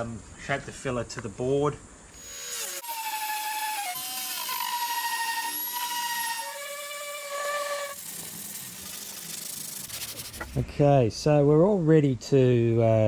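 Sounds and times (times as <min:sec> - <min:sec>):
power sander motor whine: 0:02.2 - 0:10.6.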